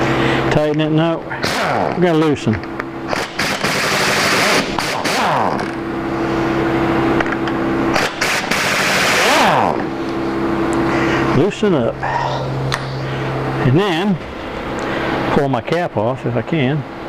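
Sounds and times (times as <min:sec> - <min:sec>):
pneumatic impact wrench hammering: 0:01.4 - 0:02.0, 0:03.1 - 0:05.8, 0:07.2 - 0:09.9.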